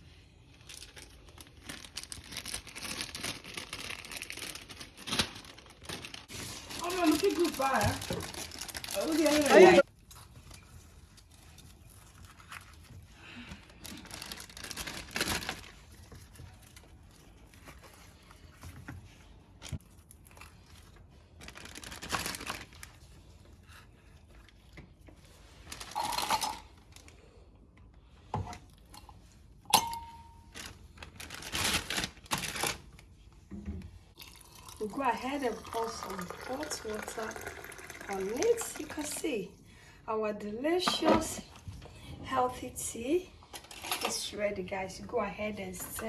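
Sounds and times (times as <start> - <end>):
plastic bag crinkling: 0.5 - 18.3, 19.7 - 24.4, 25.3 - 27.3, 30.0 - 33.2.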